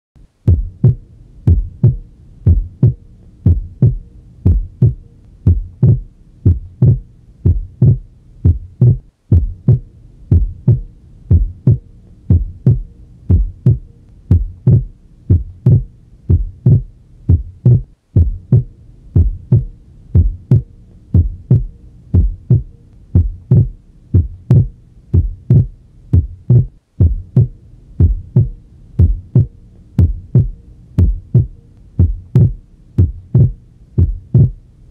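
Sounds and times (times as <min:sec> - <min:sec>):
heartbeat lub-dub: 0:00.3 - 0:34.7.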